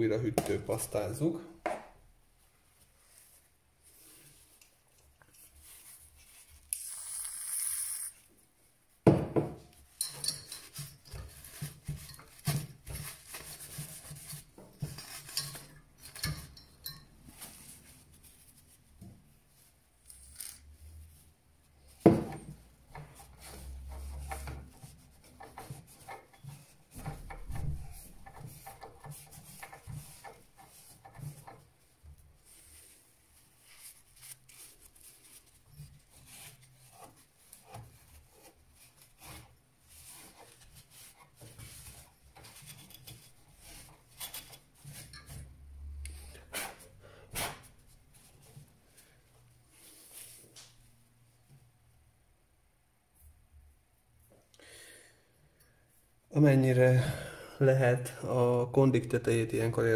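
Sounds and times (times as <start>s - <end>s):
tools scraping on metal and plastic: 9.9s - 18.0s, 21.9s - 32.8s, 33.6s - 47.7s.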